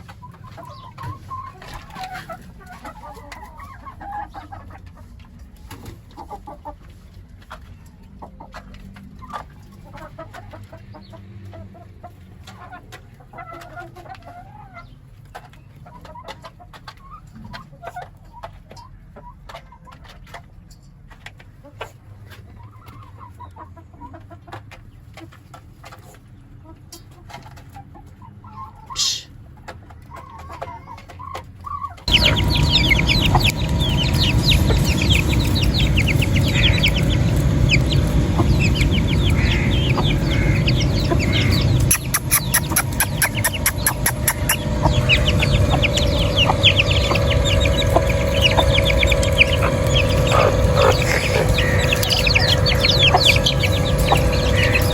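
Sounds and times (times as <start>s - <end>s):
chickens clucking and chirping: 0.0s - 54.9s
noisy background: 32.1s - 54.9s.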